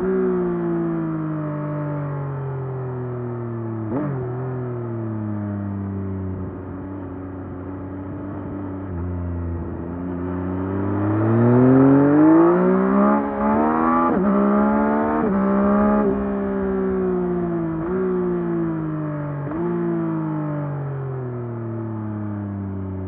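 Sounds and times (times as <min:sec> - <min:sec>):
motorcycle engine accelerating: 0:00.0 - 0:23.0.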